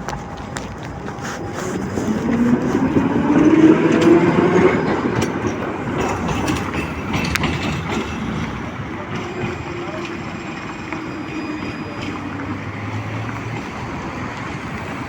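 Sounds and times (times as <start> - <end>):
tram traction drive whining: 0.0 - 15.0
wheels rolling on rails: 0.0 - 15.0.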